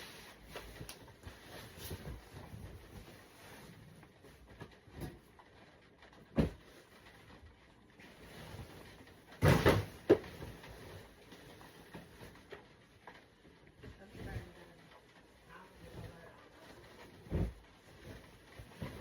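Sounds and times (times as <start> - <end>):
household knocks and clunks: 6.1 - 6.9, 8.6 - 11.0, 17.0 - 19.0.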